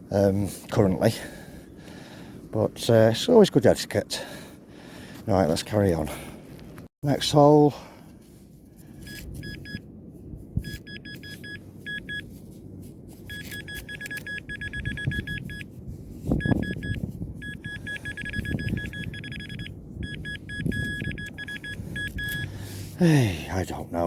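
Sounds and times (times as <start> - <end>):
metal detector beeping: 9.0 - 9.8, 10.6 - 12.3, 13.3 - 15.7, 16.4 - 22.6.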